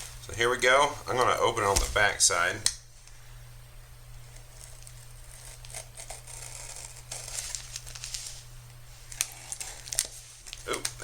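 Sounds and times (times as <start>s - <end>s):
cardboard packaging tearing: 4.4s - 8.3s.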